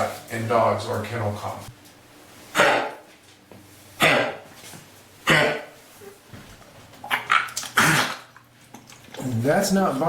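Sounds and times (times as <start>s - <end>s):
dog coughing: 2.5s - 3.1s, 4.0s - 4.5s, 5.2s - 5.8s, 7.2s - 8.3s.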